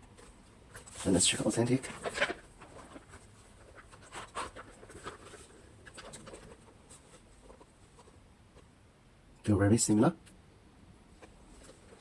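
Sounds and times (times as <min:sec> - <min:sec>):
soft rustles: 0:00.0 - 0:08.7, 0:11.1 - 0:12.0.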